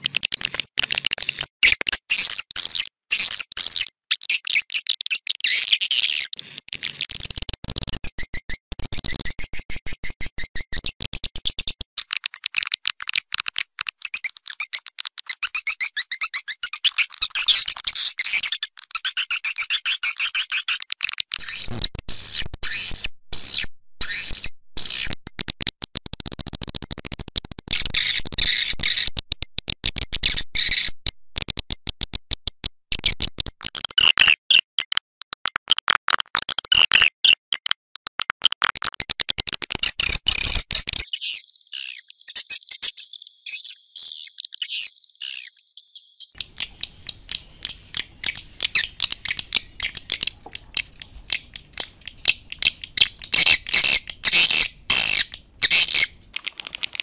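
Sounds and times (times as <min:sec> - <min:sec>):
swiftlets chirping and twittering: 0:40.0 - 0:57.0.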